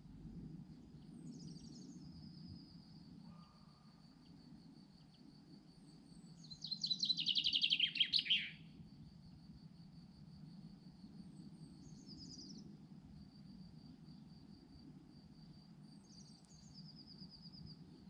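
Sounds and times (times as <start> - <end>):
songbird chirping and trilling: 6.3 - 8.7, 11.8 - 12.7, 16.0 - 17.8.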